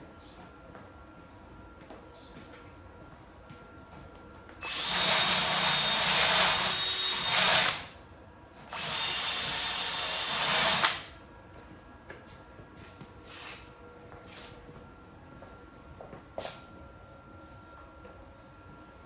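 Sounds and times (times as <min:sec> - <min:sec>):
power tool running: 0:04.6 - 0:08.0, 0:08.7 - 0:11.1.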